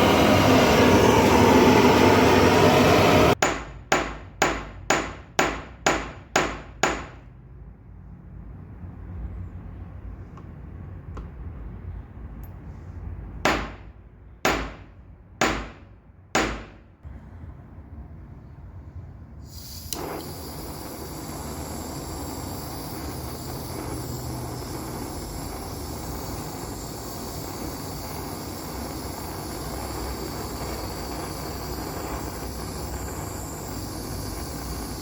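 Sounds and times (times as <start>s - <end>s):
loud rushing noise: 0.0s - 3.4s
small hammer striking metal: 3.4s - 7.2s, 13.5s - 13.9s, 14.5s - 16.8s.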